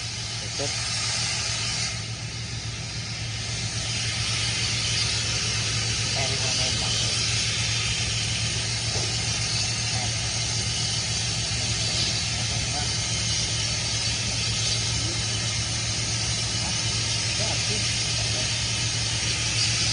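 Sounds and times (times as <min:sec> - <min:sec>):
low hum: 0:00.0 - 0:19.9
steady hiss: 0:00.0 - 0:19.9
faint voices: 0:05.2 - 0:07.8, 0:08.6 - 0:19.9.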